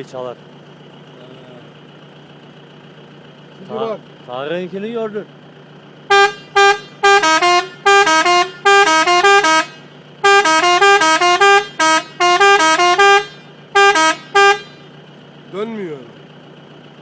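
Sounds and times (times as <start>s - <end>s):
melody car horn: 6.1s - 15.0s.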